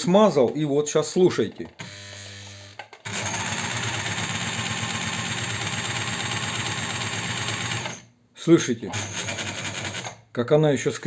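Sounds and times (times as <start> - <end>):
sewing machine motor humming: 1.8 - 8.0, 8.9 - 10.2.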